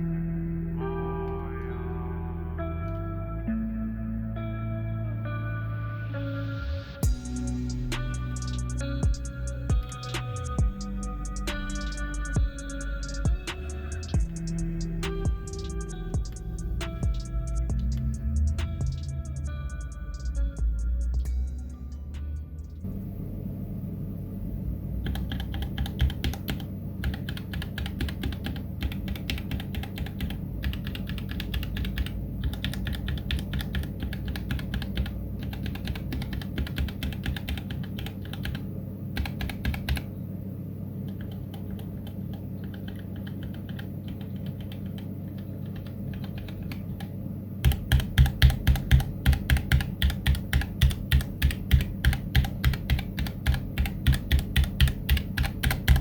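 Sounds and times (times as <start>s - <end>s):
steady low hum: 0.0s - 56.0s
mechanical keyboard typing: 25.0s - 38.6s, 39.2s - 40.1s, 41.1s - 56.0s.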